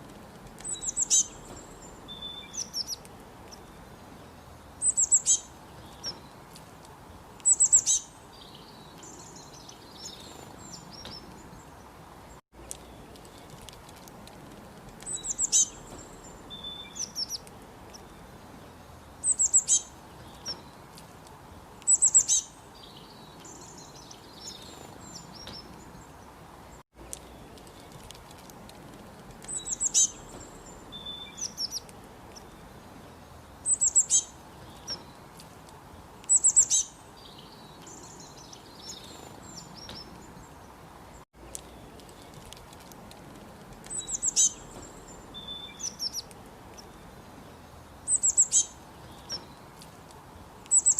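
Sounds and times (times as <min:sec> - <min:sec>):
faint steady hiss: 0:00.0 - 0:50.9
small birds chirping: 0:00.0 - 0:50.9.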